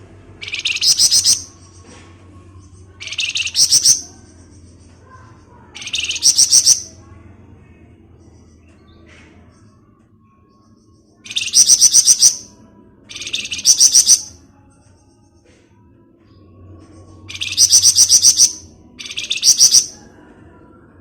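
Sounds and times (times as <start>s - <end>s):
songbird singing fast high notes: 0.4s - 1.5s, 3.0s - 4.0s, 5.8s - 6.9s, 11.3s - 12.5s, 13.1s - 14.3s, 17.3s - 19.9s.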